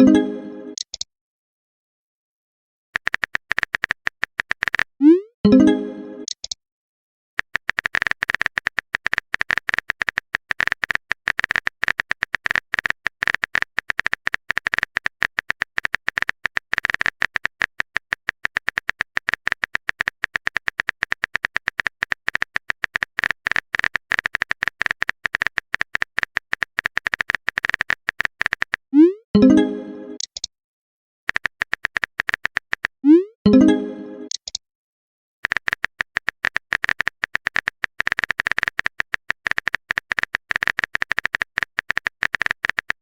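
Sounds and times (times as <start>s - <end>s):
phone keyboard typing clicks: 0.8s - 1.1s, 3.0s - 5.0s, 6.2s - 6.6s, 7.4s - 28.9s, 30.2s - 30.5s, 31.3s - 33.0s, 34.3s - 34.6s, 35.4s - 43.0s.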